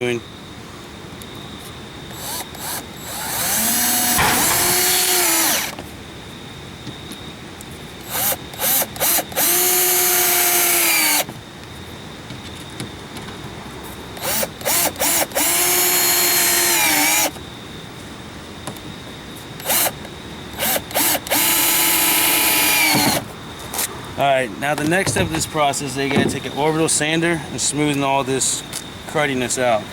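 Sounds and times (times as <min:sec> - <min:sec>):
power drill running: 0:02.1 - 0:05.8, 0:08.0 - 0:11.3, 0:14.2 - 0:17.4, 0:19.6 - 0:20.0, 0:20.6 - 0:23.3.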